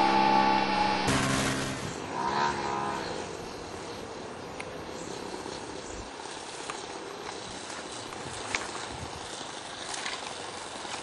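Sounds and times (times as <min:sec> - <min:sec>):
model airplane propeller whine: 0:00.0 - 0:03.8
model airplane drone: 0:00.0 - 0:11.0.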